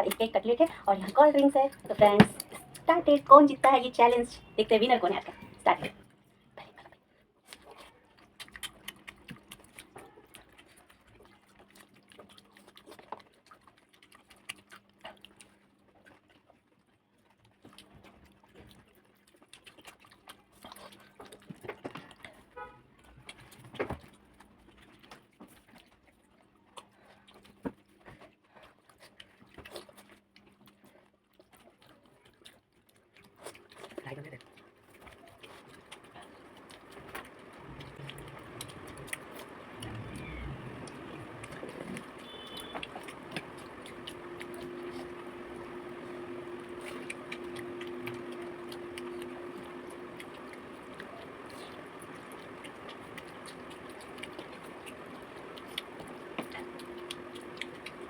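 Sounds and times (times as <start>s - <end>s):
crunching and chewing food: 0.0s - 58.0s
faint steady hum: 35.5s - 58.0s.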